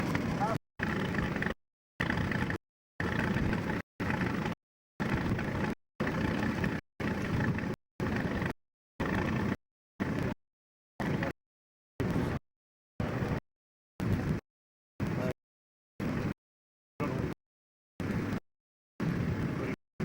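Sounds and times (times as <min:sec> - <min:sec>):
tractor engine running: 0:00.0 - 0:10.4.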